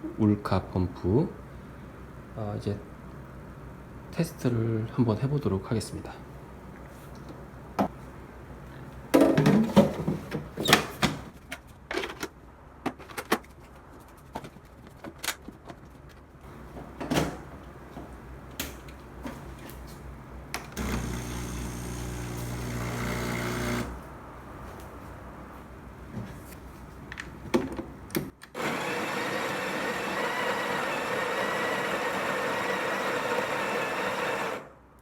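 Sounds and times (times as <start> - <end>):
pump humming: 20.8 - 24.0.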